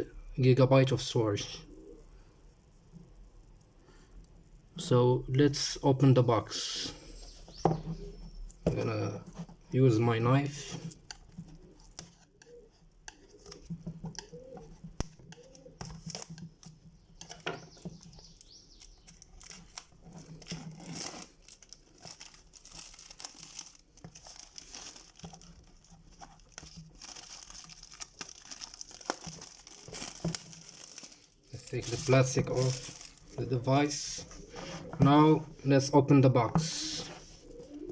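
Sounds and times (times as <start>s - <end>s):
plastic packaging crinkling and tearing: 15.0s - 16.5s, 17.3s - 34.6s.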